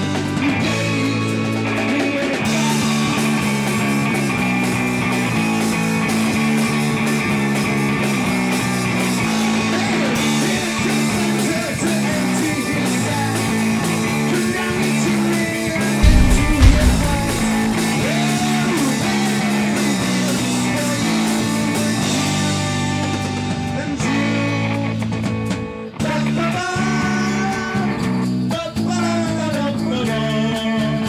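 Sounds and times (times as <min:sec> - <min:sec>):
loud low rumble: 0:16.0 - 0:18.0.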